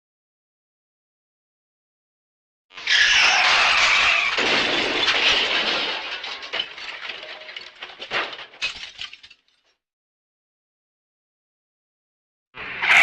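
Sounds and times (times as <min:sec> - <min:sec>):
glass smashing: 0:03.1 - 0:09.8
glass pieces clattering and tinkling: 0:04.3 - 0:09.7.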